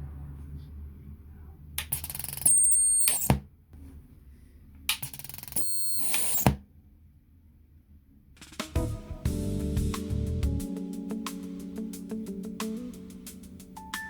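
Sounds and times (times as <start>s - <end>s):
speaker hiss with shrill squeal: 2.4s - 3.4s, 5.6s - 6.5s.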